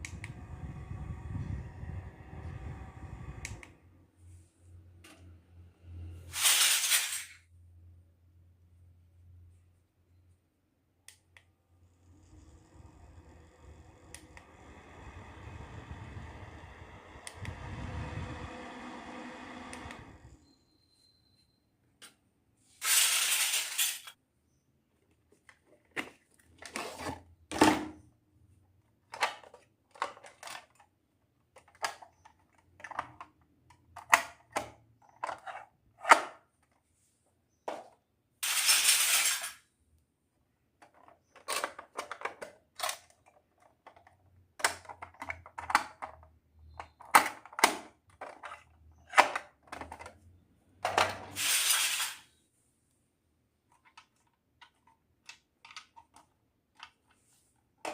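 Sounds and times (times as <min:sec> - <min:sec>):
plastic toy pieces clattering: 0:06.4 - 0:07.4, 0:22.8 - 0:24.2, 0:38.4 - 0:39.7, 0:40.8 - 0:46.3, 0:50.9 - 0:52.3.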